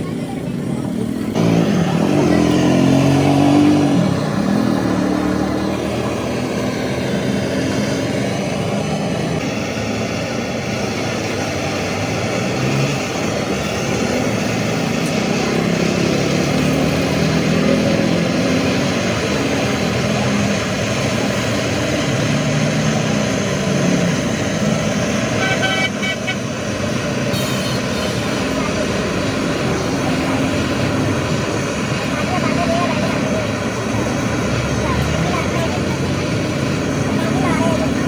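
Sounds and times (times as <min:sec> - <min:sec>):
engine running: 0:00.0 - 0:38.0
horn toot: 0:25.3 - 0:26.5.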